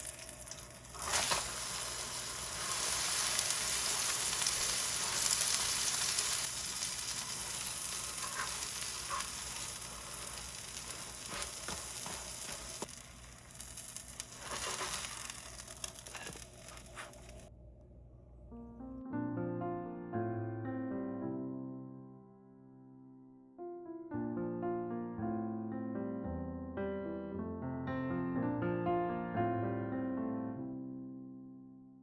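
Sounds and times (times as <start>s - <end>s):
food sizzling in a frying pan: 0.0s - 17.5s.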